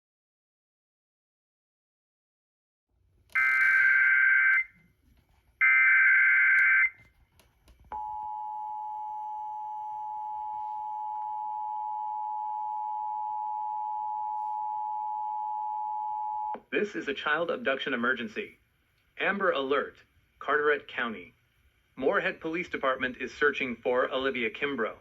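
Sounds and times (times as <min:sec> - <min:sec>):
two-tone alert signal: 0:03.4 - 0:04.7.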